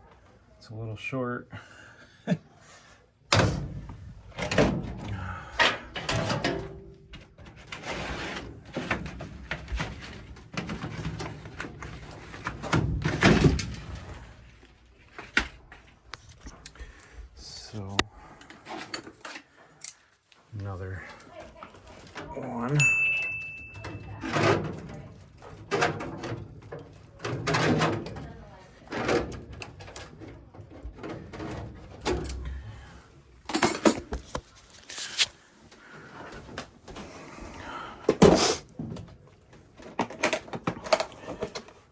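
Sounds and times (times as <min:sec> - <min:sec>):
tools knocking and rattling: 0:03.3 - 0:14.2, 0:21.3 - 0:32.6, 0:33.5 - 0:35.0.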